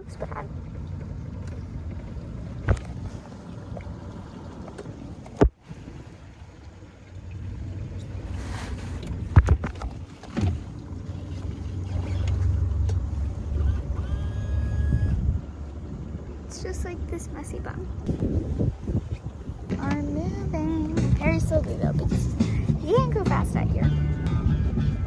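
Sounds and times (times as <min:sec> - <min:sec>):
motorboat engine rumbling: 0:00.0 - 0:25.0.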